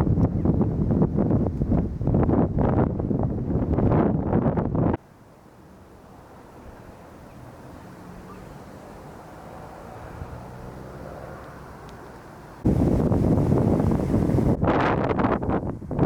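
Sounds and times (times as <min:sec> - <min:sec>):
distant engine drone: 0:05.0 - 0:14.6.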